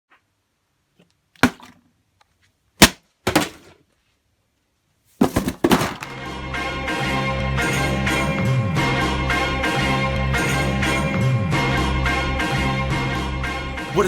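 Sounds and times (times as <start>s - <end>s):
sharp cracks or knocks: 1.4s - 1.8s, 2.8s - 3.8s, 5.2s - 6.2s
music: 6.0s - 14.0s.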